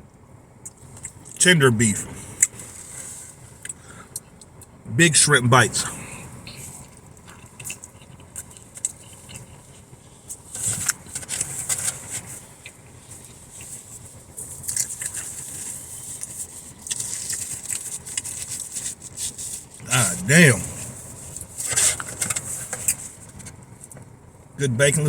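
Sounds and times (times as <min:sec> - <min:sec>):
wet chewing and mouth smacks: 0:06.5 - 0:11.5, 0:12.6 - 0:19.1.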